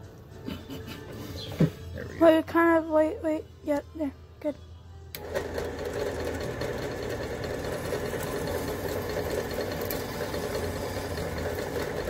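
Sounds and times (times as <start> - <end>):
drill press motor running: 5.1 - 12.0.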